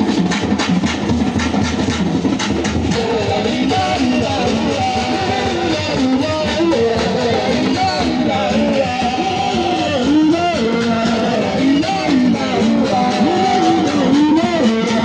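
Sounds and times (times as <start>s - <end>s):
person singing: 2.9s - 15.0s.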